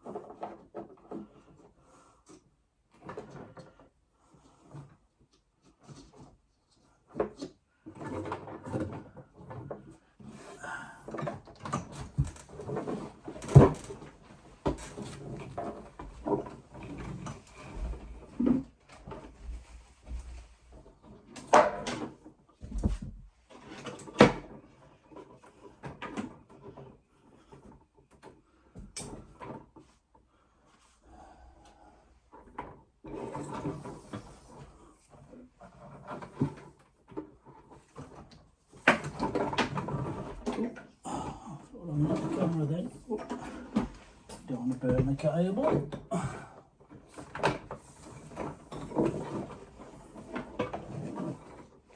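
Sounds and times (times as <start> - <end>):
tools knocking and scraping: 43.2 - 51.9.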